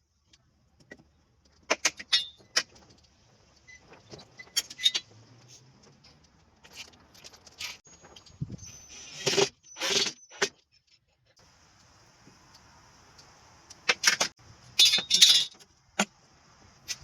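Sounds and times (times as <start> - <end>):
tools and hardware clinking: 4.1 - 5.1, 13.9 - 15.6.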